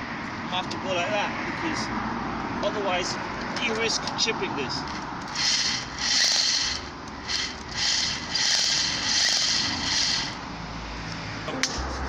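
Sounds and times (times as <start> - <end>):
power drill grinding into concrete: 4.9 - 10.4.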